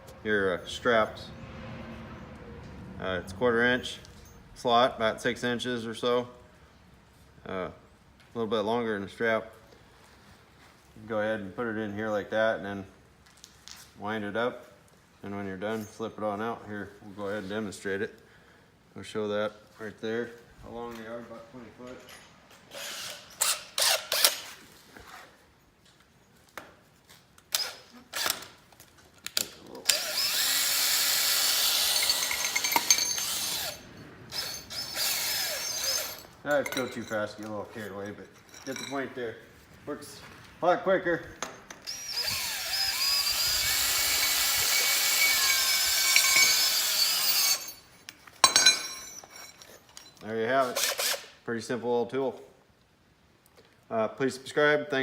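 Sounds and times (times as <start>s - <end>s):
power drill motor whine: 29.9s - 36.2s, 41.8s - 47.8s, 50.8s - 51.3s.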